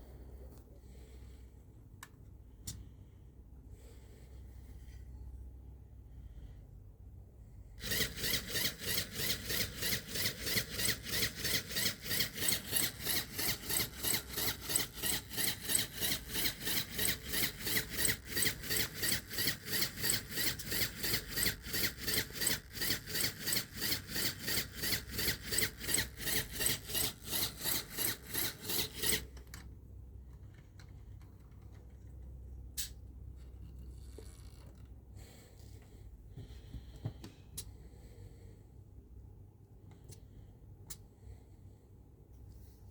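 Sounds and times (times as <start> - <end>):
pneumatic compressor rhythmic rasping: 7.8 - 29.3.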